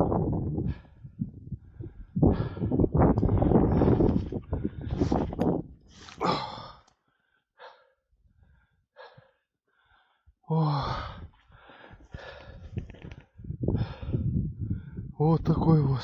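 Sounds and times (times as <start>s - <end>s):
man breathing hard: 0.6s - 5.4s, 6.0s - 13.0s, 13.6s - 15.2s
man gasping groan: 6.1s - 6.9s, 10.5s - 11.3s.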